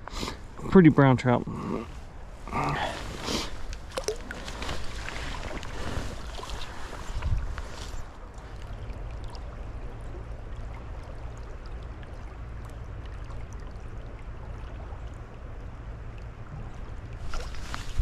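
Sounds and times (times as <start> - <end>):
stream running: 0.0 - 18.0.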